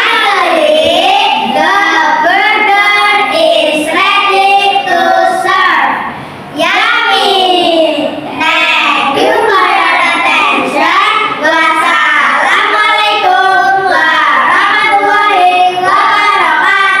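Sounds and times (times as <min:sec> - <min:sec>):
child singing: 0:06.6 - 0:17.0.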